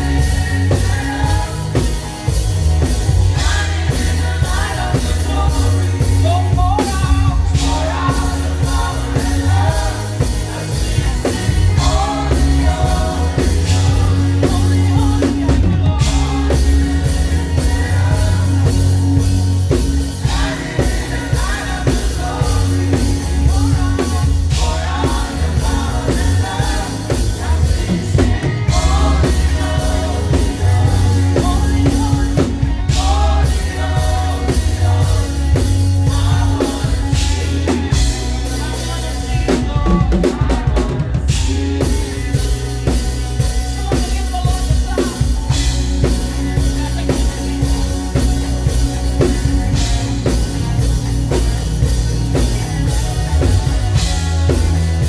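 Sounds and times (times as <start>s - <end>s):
drum kit: 0.0s - 55.0s
heavy bass line: 0.0s - 55.0s
people singing: 0.0s - 55.0s.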